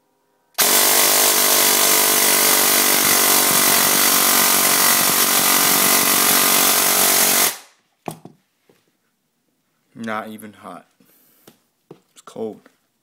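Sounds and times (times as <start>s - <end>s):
toy gun motor firing full auto: 0.6s - 7.7s.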